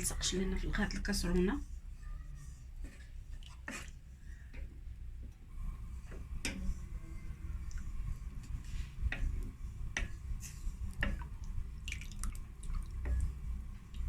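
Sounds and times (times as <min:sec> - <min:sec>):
utensil stirring thick sauce: 0:00.0 - 0:14.0
utensil tapping against pot: 0:11.0 - 0:11.3
wet squelching: 0:11.1 - 0:13.0.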